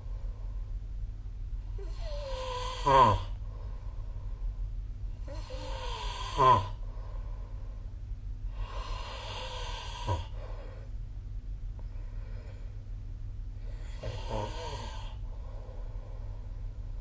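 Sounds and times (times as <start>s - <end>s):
person snoring: 1.8s - 3.4s, 5.2s - 6.8s, 8.6s - 10.4s, 13.6s - 15.3s.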